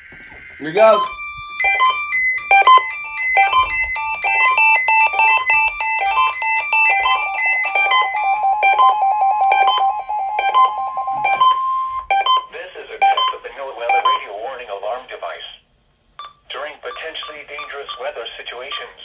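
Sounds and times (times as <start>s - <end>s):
steady high tone: 0.3s - 12.5s
electronic beeps and chirps: 0.7s - 14.2s, 16.9s - 18.0s
fast short beeps: 16.2s - 18.1s.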